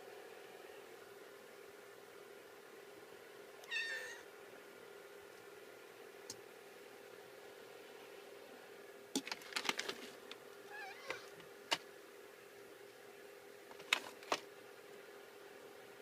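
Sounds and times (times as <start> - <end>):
steady low hum: 0.0 - 16.0
cat meow: 3.6 - 4.3, 10.7 - 11.3.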